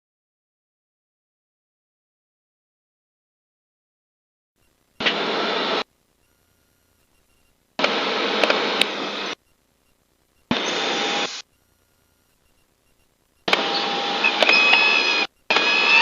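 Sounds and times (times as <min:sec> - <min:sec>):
aircraft cockpit noise: 0:04.6 - 0:16.0
squeal: 0:13.6 - 0:16.0.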